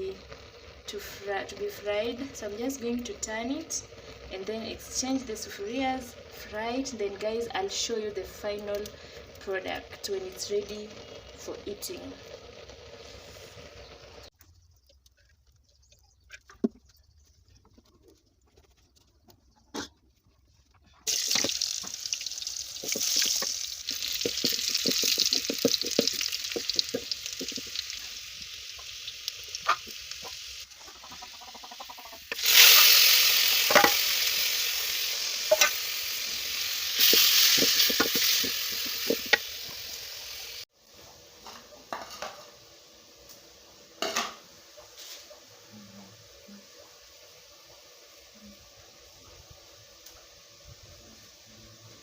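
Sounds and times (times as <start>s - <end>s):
greens sizzling in oil: 0.0s - 14.4s, 21.0s - 52.0s
spoon stirring and knocking pot: 22.8s - 27.8s, 37.0s - 39.4s.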